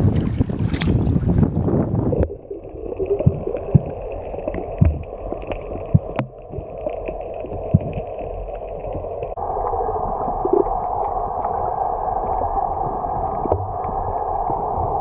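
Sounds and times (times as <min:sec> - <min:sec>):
wind noise: 0:00.0 - 0:04.0, 0:09.3 - 0:15.0
dull underwater hum: 0:00.0 - 0:15.0.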